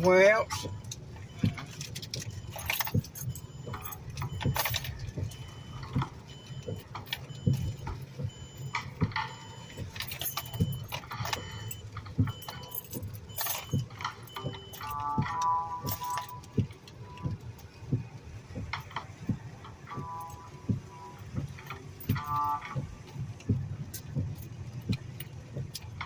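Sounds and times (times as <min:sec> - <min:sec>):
low hum of car: 0:00.0 - 0:26.0
keys jangling: 0:01.3 - 0:05.1, 0:09.4 - 0:15.1, 0:15.8 - 0:16.4.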